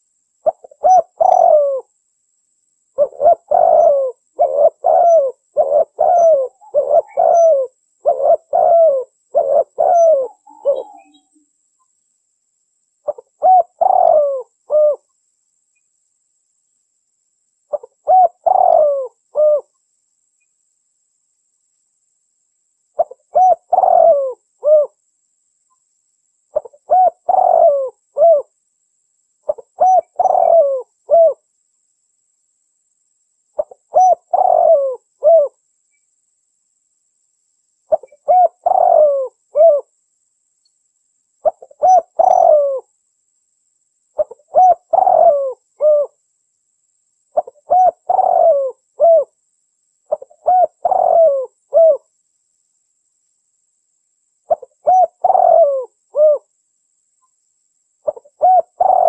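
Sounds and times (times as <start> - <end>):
dove cooing: 0.4 - 1.9, 3.0 - 11.3, 13.0 - 15.0, 17.7 - 19.7, 23.0 - 25.0, 26.5 - 28.5, 29.5 - 31.4, 33.6 - 35.6, 37.9 - 39.9, 41.4 - 42.9, 44.2 - 46.2, 47.4 - 49.4, 50.1 - 52.1, 54.5 - 56.5, 58.0 - 59.0.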